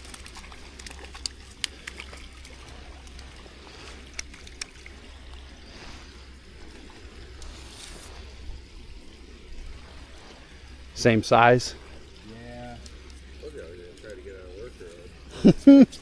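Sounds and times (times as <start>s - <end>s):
running water rushing: 0.0s - 16.0s.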